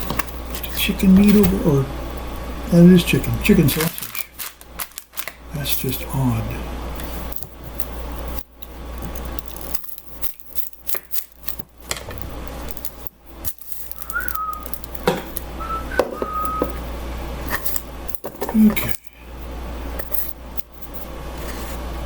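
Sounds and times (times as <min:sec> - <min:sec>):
short whistled notes: 0:14.0 - 0:14.8, 0:15.6 - 0:16.8.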